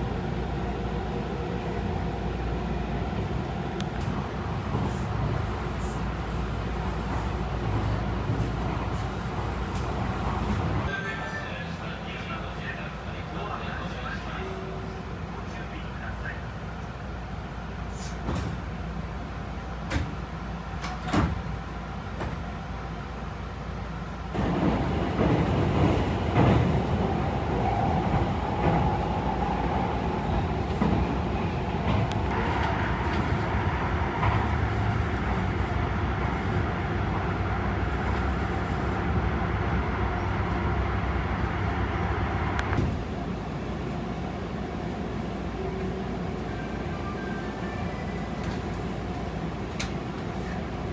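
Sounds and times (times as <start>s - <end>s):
train rumble inside carriage: 0.0s - 50.9s.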